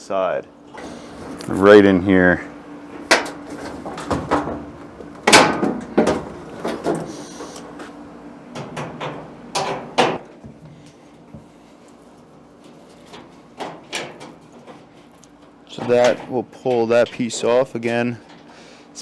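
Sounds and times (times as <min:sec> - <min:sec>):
tools knocking on sheet metal: 0:08.6 - 0:10.6.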